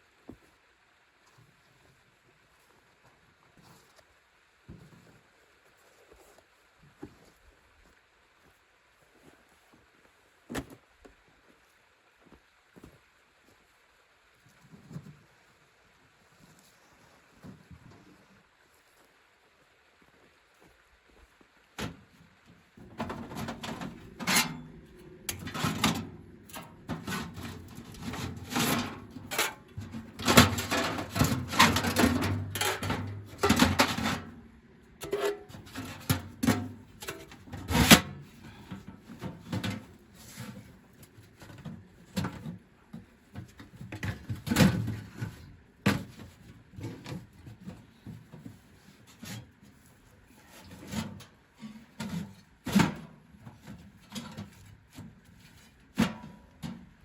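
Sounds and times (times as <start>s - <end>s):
objects knocking and scraping: 22.8s - 49.5s.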